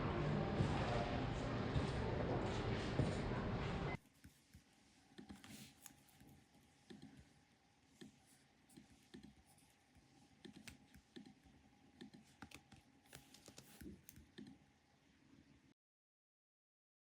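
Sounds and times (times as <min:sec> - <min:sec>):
soft keyboard typing: 0:08.0 - 0:09.8, 0:10.4 - 0:14.6.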